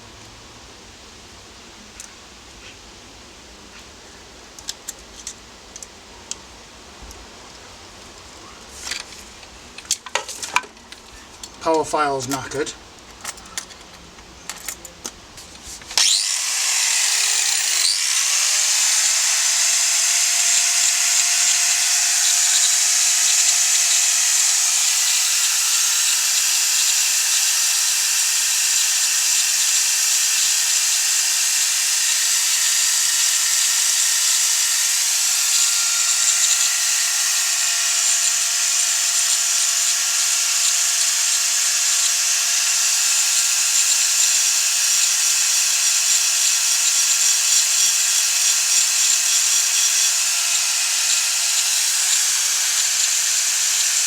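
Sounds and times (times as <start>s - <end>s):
electric grinder whining: 15.8s - 54.0s.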